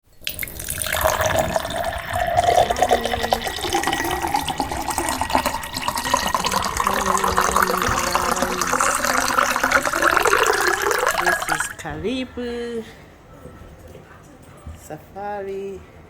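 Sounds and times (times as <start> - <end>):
running water rushing: 0.1 - 11.8.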